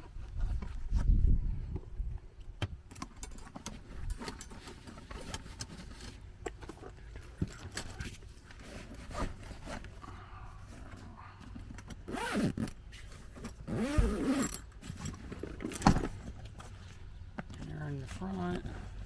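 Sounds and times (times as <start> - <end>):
metal tools clinking and rattling: 3.0 - 8.2, 12.6 - 16.4.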